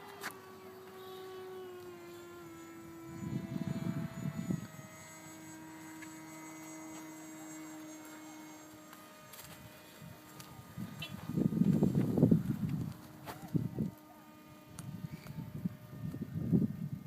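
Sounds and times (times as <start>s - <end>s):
propeller airplane droning: 0.0s - 17.0s
wind noise on microphone: 2.5s - 5.8s, 9.5s - 17.0s.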